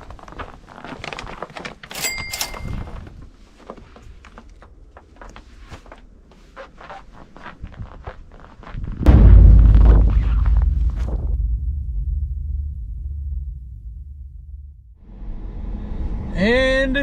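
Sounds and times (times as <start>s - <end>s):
ringing metallic ding: 2.0s - 2.8s
knocks and thunks: 9.1s - 15.0s.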